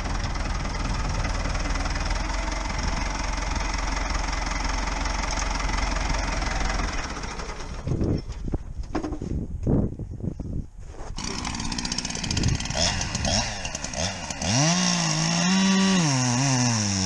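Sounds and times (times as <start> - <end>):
engine idling: 0.0 - 8.6.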